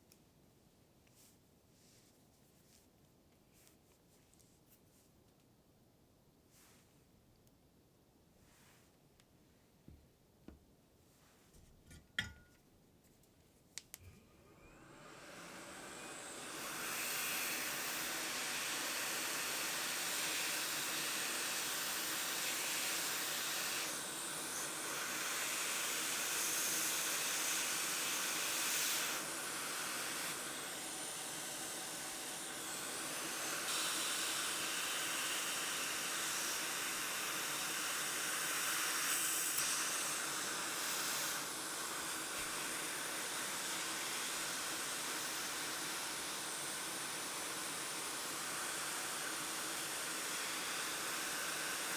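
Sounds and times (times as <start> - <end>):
hot air blower hissing: 14.3 - 51.9.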